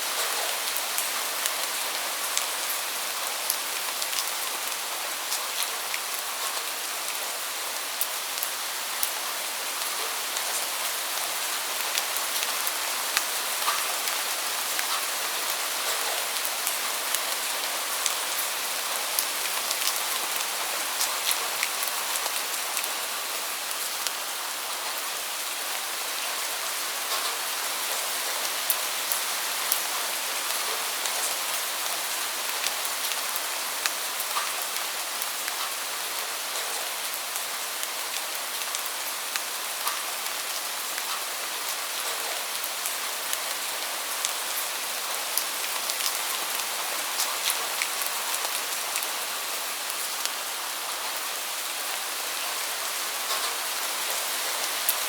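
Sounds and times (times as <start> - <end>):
steady rain hiss: 0.0 - 55.0
raindrops ticking on surface: 7.8 - 23.0, 27.0 - 50.4, 53.2 - 55.0.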